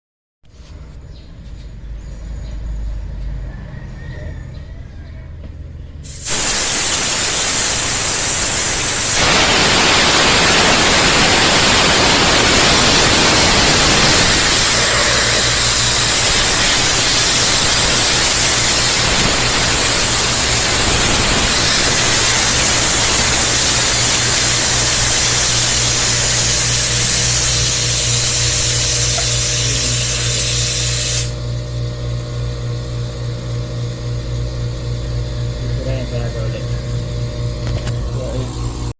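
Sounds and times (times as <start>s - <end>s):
compressed air hissing from nozzle: 6.0s - 31.4s.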